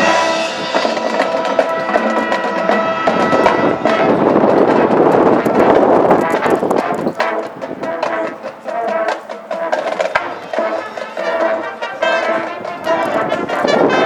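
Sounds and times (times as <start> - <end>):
brass sustained notes: 0.0 - 14.0
clicking percussion: 0.8 - 2.8, 4.2 - 7.5.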